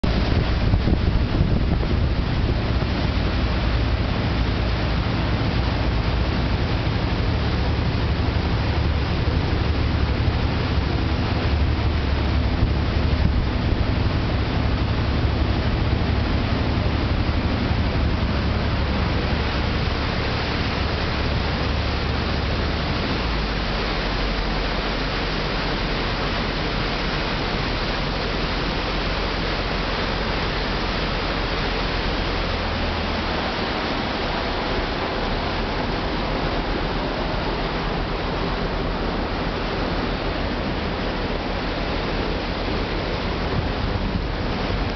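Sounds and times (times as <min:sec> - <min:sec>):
underwater low rumble: 0:00.0 - 0:44.9.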